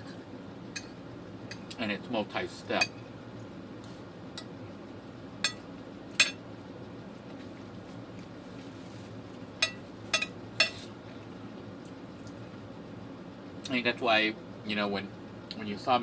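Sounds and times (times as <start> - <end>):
low background hum: 0.0 - 16.0
cutlery clinking against a plate: 5.4 - 6.4, 9.6 - 10.9.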